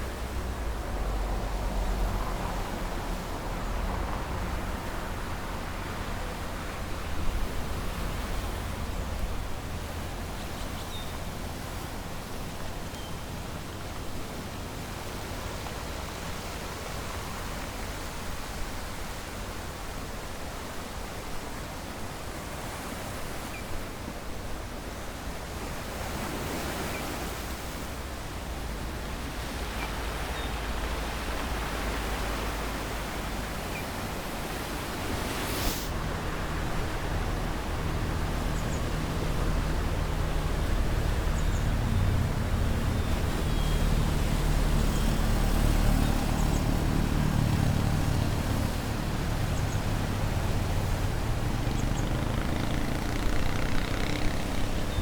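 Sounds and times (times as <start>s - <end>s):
ocean surf roaring: 26.0s - 55.0s
vehicle engine running low: 27.9s - 55.0s.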